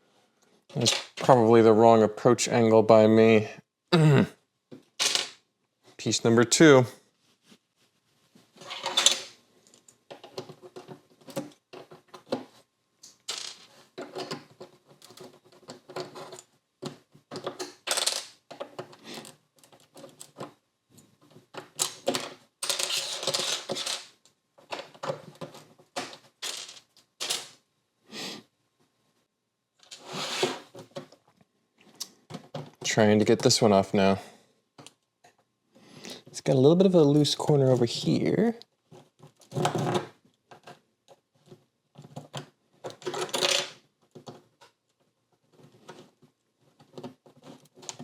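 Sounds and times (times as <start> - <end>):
plastic bricks clicking and clattering: 0.7 - 1.3, 13.0 - 20.6, 21.5 - 27.6, 42.0 - 44.8.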